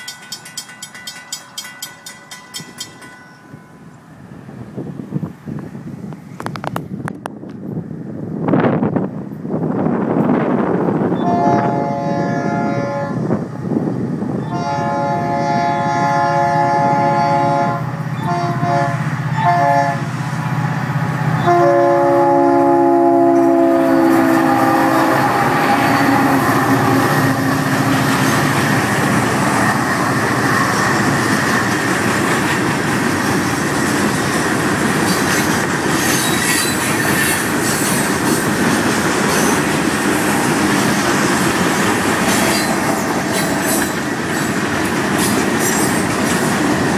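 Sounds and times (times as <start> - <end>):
train wheels rumbling on rails: 0.0 - 46.9
locomotive air horn blasts: 11.2 - 13.3, 14.4 - 20.1, 21.4 - 27.9.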